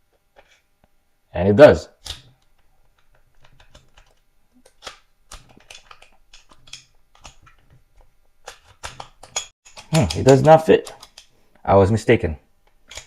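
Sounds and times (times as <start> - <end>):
pistol slide clicks and scrapes: 3.0 - 7.7, 8.4 - 11.3.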